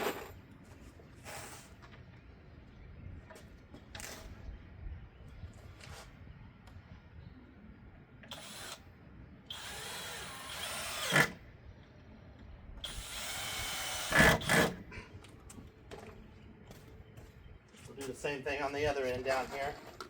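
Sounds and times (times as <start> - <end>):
power drill driving screws into wood: 8.3 - 8.8, 9.5 - 11.4, 12.8 - 14.8.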